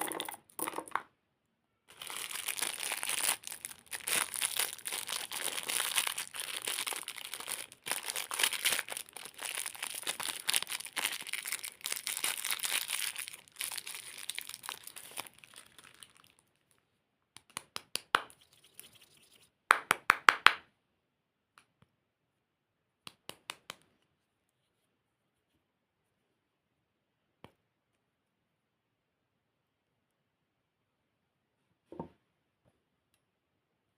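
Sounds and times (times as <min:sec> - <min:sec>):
plastic wrappers crinkling and tearing: 0:01.9 - 0:16.7.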